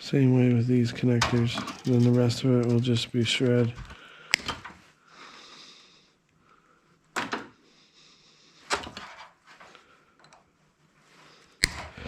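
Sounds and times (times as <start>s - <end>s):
wire and parts clicking: 1.2s - 4.8s, 11.5s - 12.0s.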